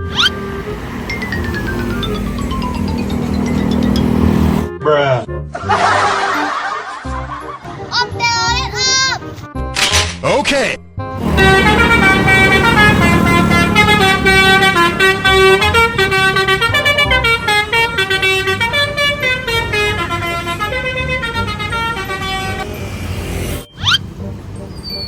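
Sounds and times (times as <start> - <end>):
musical bus horn playing a tune: 0.0 - 4.7, 11.1 - 25.0
short rising sweep: 0.0 - 4.7.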